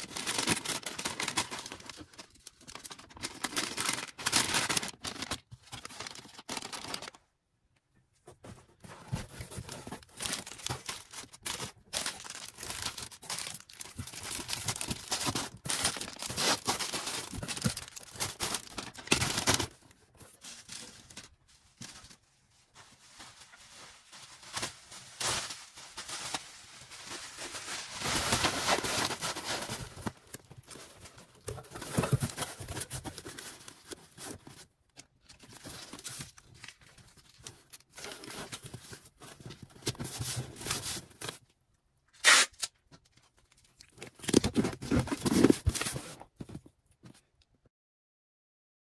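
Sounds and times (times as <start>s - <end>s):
packaging crinkling and rustling: 0.0s - 7.2s, 8.3s - 41.4s, 42.4s - 47.3s
packaging tearing: 10.0s - 19.7s, 42.2s - 42.8s.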